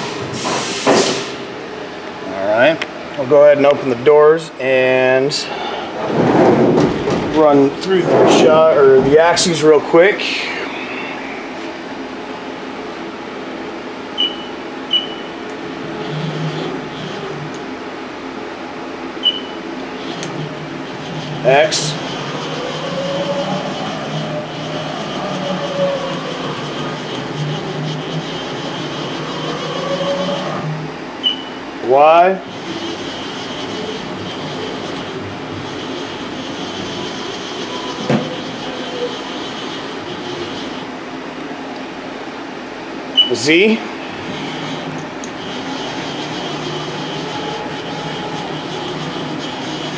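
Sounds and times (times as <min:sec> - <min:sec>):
machine hum: 0:04.5 - 0:49.9
short high keypad beeps: 0:14.2 - 0:15.3, 0:19.2 - 0:19.6.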